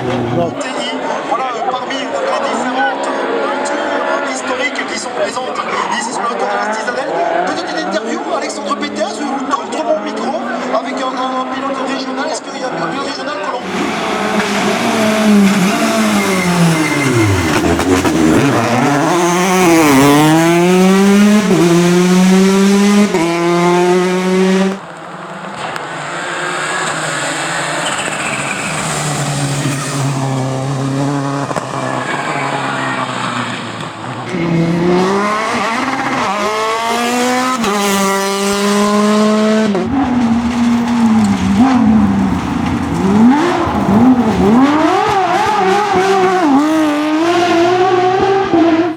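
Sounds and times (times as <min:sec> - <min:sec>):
rally cars accelerating through gears: 0:00.0 - 0:01.3, 0:13.0 - 0:48.9.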